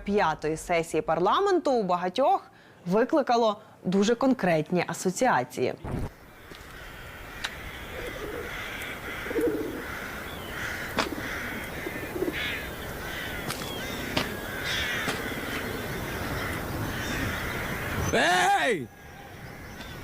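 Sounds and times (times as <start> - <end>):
crows cawing: 6.2 - 20.0.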